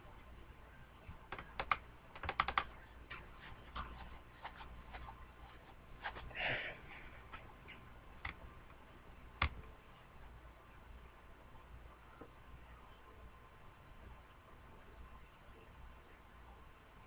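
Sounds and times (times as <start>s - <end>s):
keyboard and mouse clicks: 1.3s - 5.1s, 7.3s - 8.4s, 9.4s - 9.6s.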